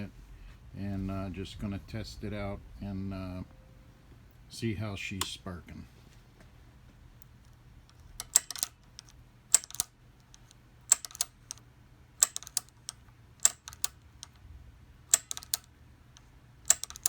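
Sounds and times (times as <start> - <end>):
igniter snapping clicks: 7.9 - 11.6, 12.2 - 14.4, 15.1 - 17.0.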